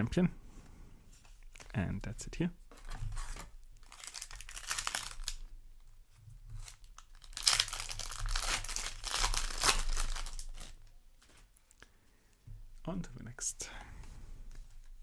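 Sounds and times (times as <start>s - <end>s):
foil wrapper crinkling and tearing: 3.2s - 5.5s, 6.6s - 10.8s.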